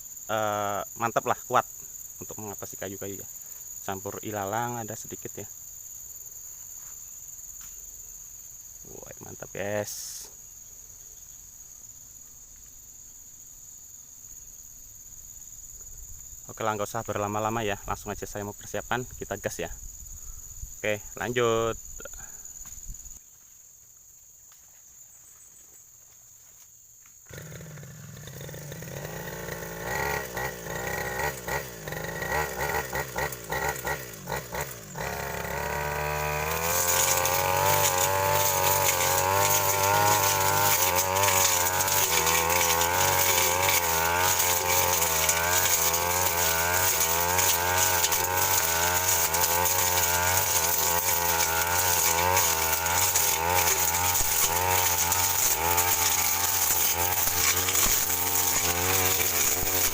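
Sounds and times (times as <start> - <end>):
brush cutter engine revving: 27.3 - 59.9
blade cutting through scrub: 27.4 - 59.9.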